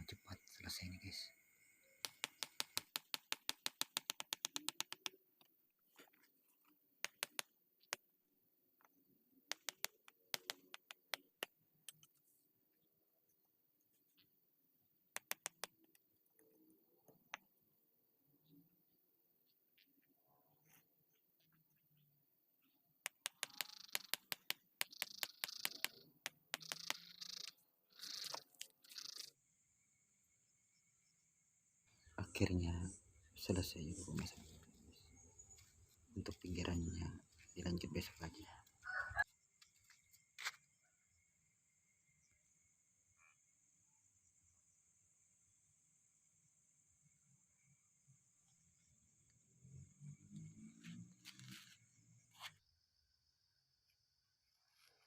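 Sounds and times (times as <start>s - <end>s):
rapid sharp clicks: 2.0s - 5.2s, 7.0s - 8.0s, 9.5s - 12.0s, 23.0s - 29.3s.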